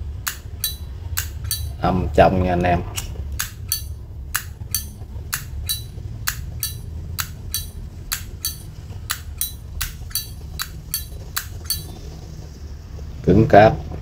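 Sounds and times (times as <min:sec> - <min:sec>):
lighter lid metallic clicks: 0:00.2 - 0:01.8, 0:03.0 - 0:11.9.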